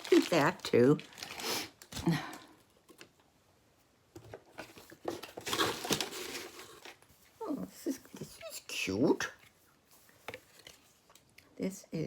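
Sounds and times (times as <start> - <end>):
packaging rustling and crinkling: 0.0 - 3.2, 4.3 - 7.5.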